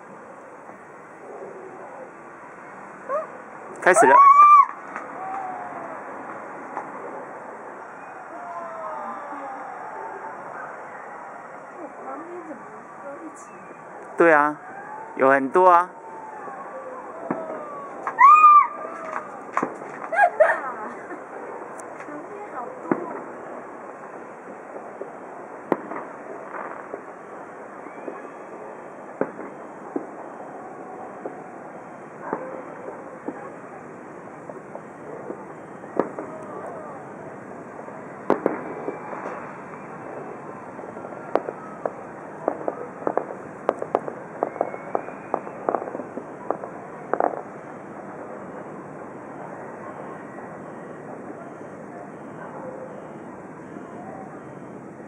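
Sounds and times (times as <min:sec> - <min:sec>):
steady background hiss: 0:00.0 - 0:55.0
distant fireworks bangs: 0:16.0 - 0:55.0.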